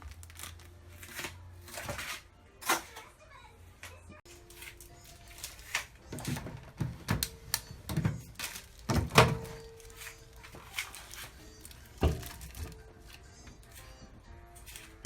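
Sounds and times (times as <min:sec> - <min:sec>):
handling knocks and thuds: 0:06.1 - 0:09.7, 0:11.9 - 0:12.8.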